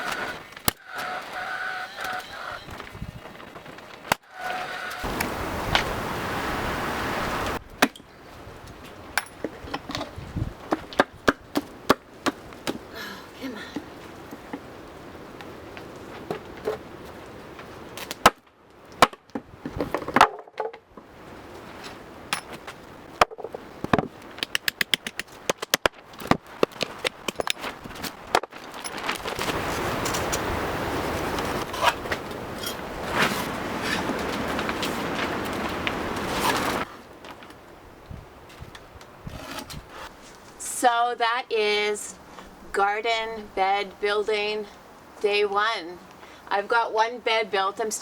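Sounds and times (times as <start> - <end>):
sharp knocks and clicks: 23.2 - 27.6.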